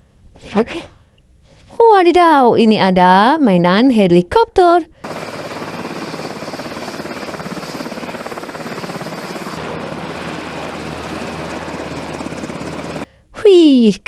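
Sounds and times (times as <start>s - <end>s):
helicopter rotor chopping: 5.0s - 13.1s.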